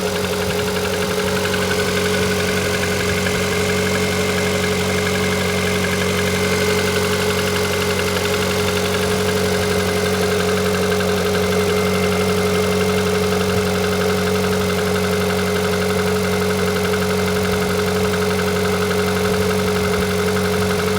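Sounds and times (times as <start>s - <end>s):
car engine idling: 0.0s - 20.9s
fast engine knocking tick: 0.0s - 20.9s.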